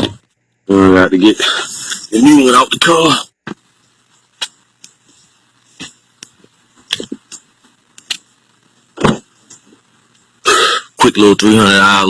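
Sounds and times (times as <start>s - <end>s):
deep thump: 9.0s - 9.3s.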